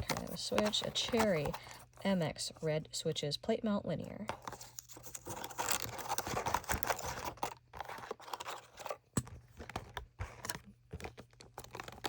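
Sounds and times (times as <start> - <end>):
plastic packaging rustling: 0.0 - 1.9, 4.4 - 12.0.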